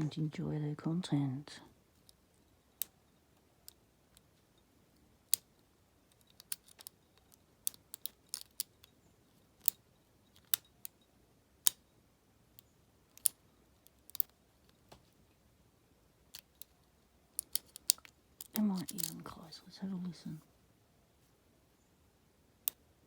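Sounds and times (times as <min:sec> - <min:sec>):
lock pick clicking on pins: 0:02.0 - 0:11.9, 0:12.6 - 0:14.8, 0:16.3 - 0:19.4.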